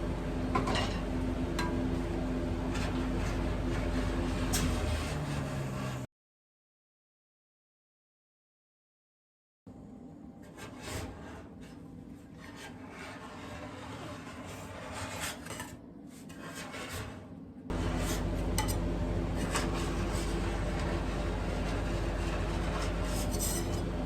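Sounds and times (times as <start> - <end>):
metal spatulas scraping ice cream: 2.7 - 5.5, 10.4 - 24.0
loud steady hum: 17.7 - 24.0.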